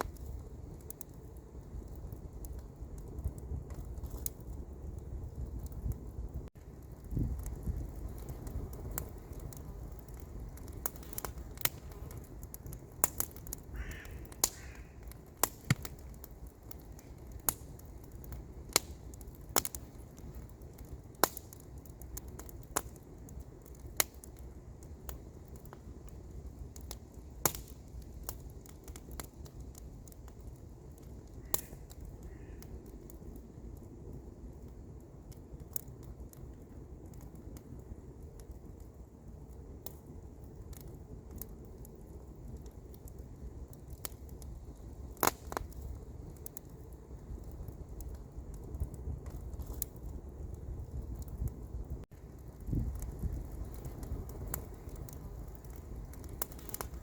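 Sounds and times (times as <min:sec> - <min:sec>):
campfire crackling and popping: 0:00.0 - 0:57.0
fire low rumble: 0:00.0 - 0:57.0.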